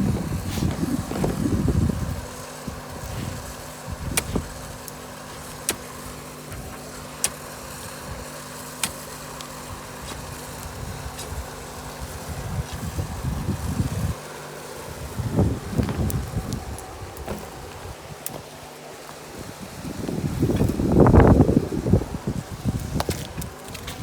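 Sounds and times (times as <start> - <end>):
low irregular rumbling: 0.0 - 8.4, 14.8 - 24.0
motor humming: 0.0 - 24.0.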